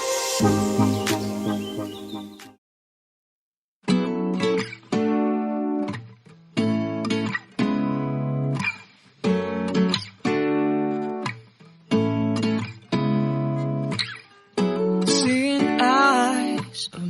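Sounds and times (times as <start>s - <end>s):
acoustic guitar strumming chords: 0.0s - 2.4s, 3.8s - 17.0s.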